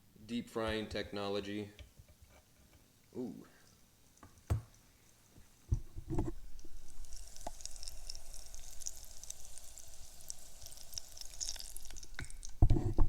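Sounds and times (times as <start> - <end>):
oil sizzling in a deep fryer: 6.3 - 12.8.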